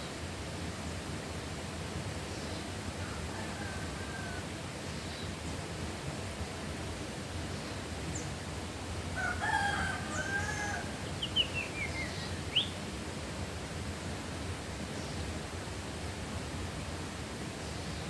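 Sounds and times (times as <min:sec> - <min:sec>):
steady rustling hiss: 0:00.0 - 0:18.0
rooster crowing: 0:03.0 - 0:04.5, 0:09.2 - 0:11.1
small bird chirping: 0:11.2 - 0:12.8.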